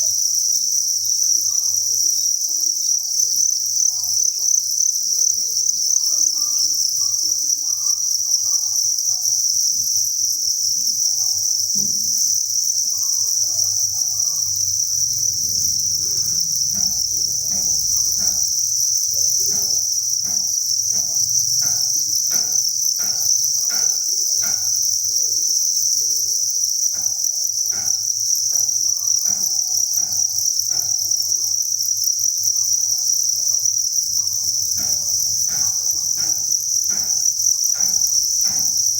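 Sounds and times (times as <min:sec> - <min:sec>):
crickets chirping: 0:00.0 - 0:38.9.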